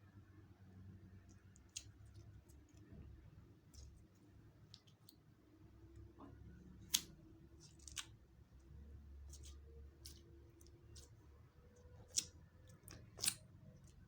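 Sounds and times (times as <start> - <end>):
low steady hum: 0.0 - 14.0
sticky slime clicks and pops: 6.9 - 8.2, 12.0 - 13.5.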